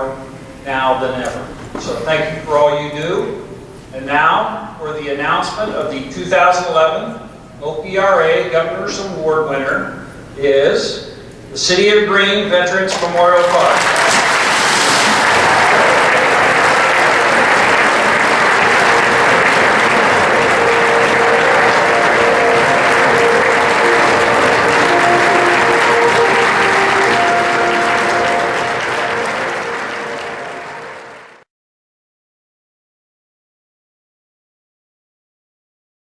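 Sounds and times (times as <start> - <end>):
audience applauding: 12.9 - 31.5
music playing: 14.8 - 31.4.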